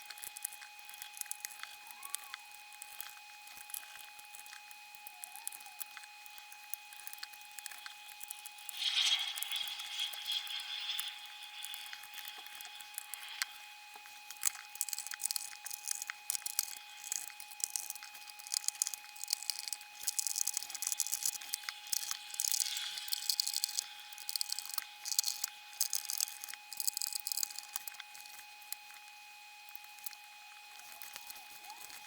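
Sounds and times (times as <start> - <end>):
small clicks and rattles of screws: 14.4 - 27.9.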